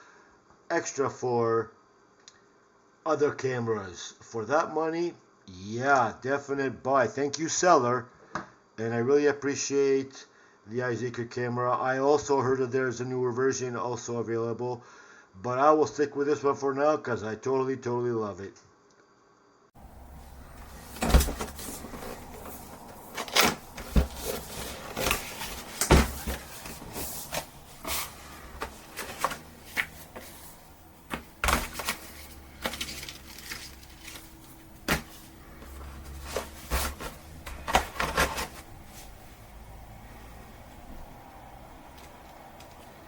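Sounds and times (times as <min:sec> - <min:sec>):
objects handled knocking and rustling: 0:19.8 - 0:39.8.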